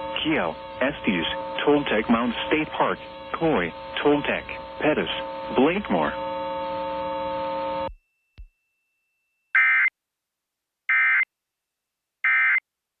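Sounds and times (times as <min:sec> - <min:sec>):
steady humming tone: 0:00.0 - 0:08.0.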